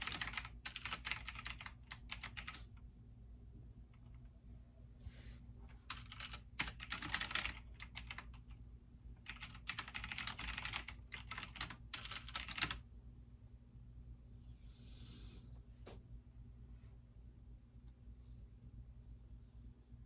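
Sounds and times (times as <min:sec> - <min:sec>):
computer keyboard typing: 0:00.0 - 0:02.8, 0:05.8 - 0:08.6, 0:09.2 - 0:12.8
faint low hum: 0:00.0 - 0:20.0.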